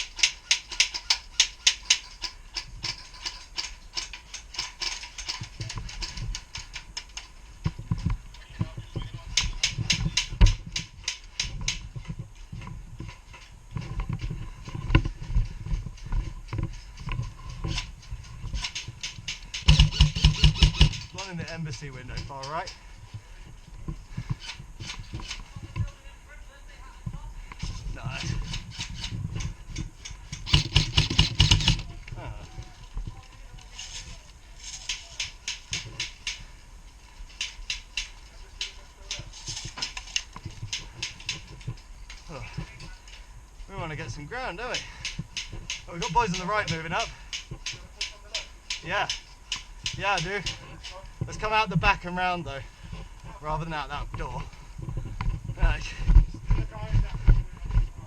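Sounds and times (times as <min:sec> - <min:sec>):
sharp clicks: 0:00.0 - 0:07.3, 0:08.3 - 0:11.9, 0:17.0 - 0:22.8, 0:27.5 - 0:31.9, 0:34.7 - 0:36.5, 0:37.3 - 0:42.2, 0:44.7 - 0:51.0
irregular thuds: 0:07.6 - 0:25.8, 0:27.6 - 0:31.9
airsoft gun shots: 0:19.6 - 0:21.2, 0:30.3 - 0:31.8.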